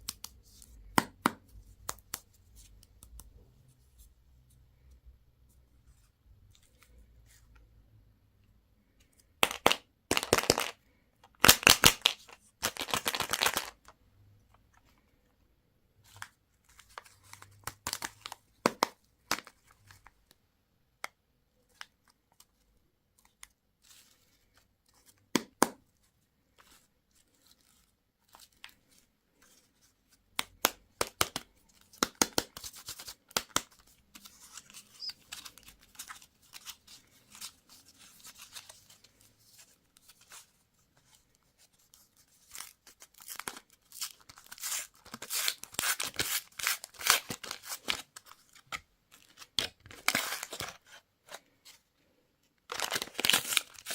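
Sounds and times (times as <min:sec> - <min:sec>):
candy wrappers tearing: 0:11.4 - 0:13.8, 0:52.7 - 0:53.9.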